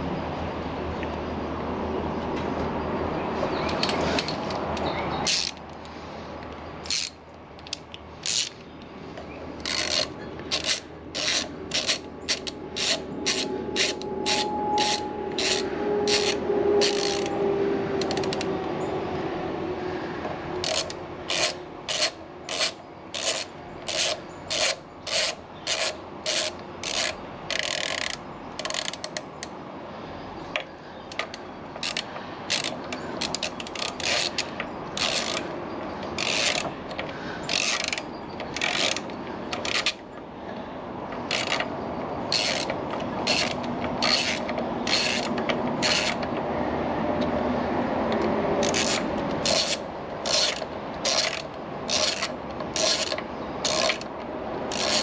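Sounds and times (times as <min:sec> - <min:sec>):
steady mechanical noise: 0:00.0 - 0:55.0
ratchet wrench strokes: 0:03.7 - 0:05.8, 0:06.8 - 0:08.6, 0:09.6 - 0:17.3, 0:18.0 - 0:18.5, 0:20.6 - 0:29.2, 0:31.1 - 0:35.5, 0:36.1 - 0:40.0, 0:41.3 - 0:41.7, 0:42.3 - 0:46.3, 0:48.6 - 0:54.1, 0:54.7 - 0:55.0.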